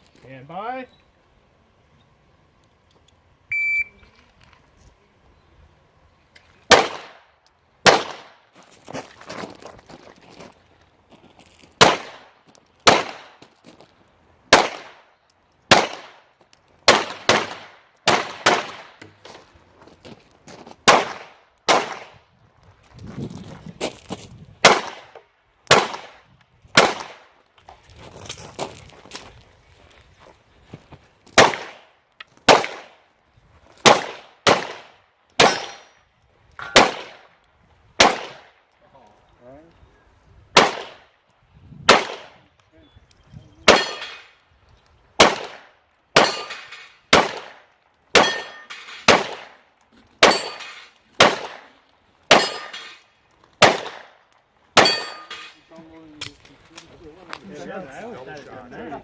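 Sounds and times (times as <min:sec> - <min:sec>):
handgun shots: 0:16.9 - 0:19.0, 0:20.9 - 0:22.2, 0:24.6 - 0:25.1, 0:43.7 - 0:44.3, 0:45.2 - 0:47.6, 0:48.2 - 0:49.6, 0:50.2 - 0:51.7, 0:52.3 - 0:53.0, 0:53.6 - 0:54.2, 0:54.8 - 0:55.5.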